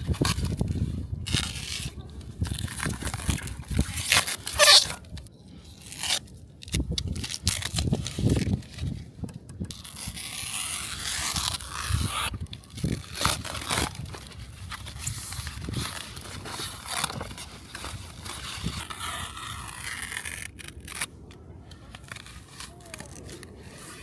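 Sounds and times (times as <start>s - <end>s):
plastic wrap crinkling and tearing: 0.0s - 9.0s, 9.7s - 24.0s
scraping: 0.0s - 24.0s.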